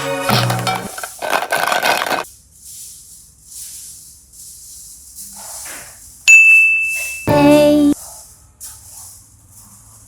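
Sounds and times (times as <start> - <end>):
soft hissing and rustling: 2.2 - 6.3
bright ding: 6.3 - 7.6.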